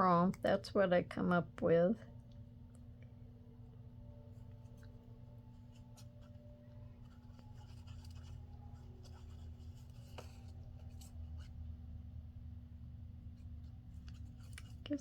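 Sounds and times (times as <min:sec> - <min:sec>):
low steady hum: 0:00.0 - 0:15.0
paper rustling and scraping: 0:05.4 - 0:11.6, 0:13.4 - 0:15.0.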